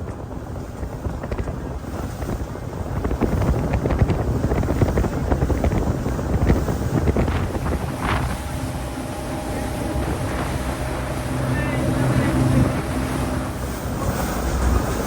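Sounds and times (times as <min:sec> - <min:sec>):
boat on water: 0:00.0 - 0:15.0
wind buffeting microphone: 0:00.0 - 0:15.0.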